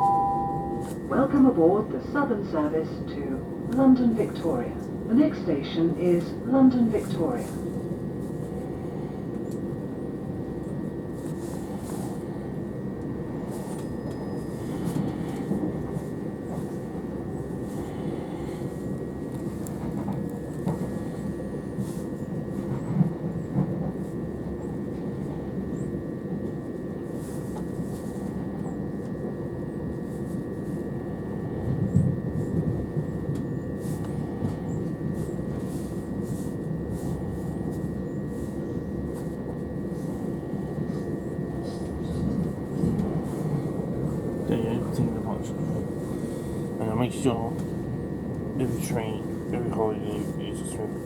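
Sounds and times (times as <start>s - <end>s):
train rumble with whine: 0.0s - 51.0s.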